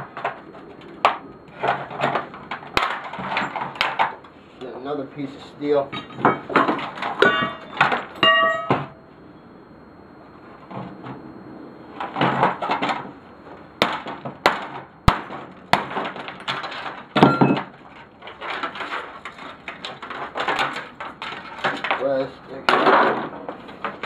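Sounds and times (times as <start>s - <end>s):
plastic and metal clattering: 0.0s - 4.3s, 5.9s - 8.9s, 13.8s - 24.0s
steel clinking with ringing tone: 7.2s - 9.1s, 17.2s - 17.7s
sharp cracks: 13.8s - 17.0s.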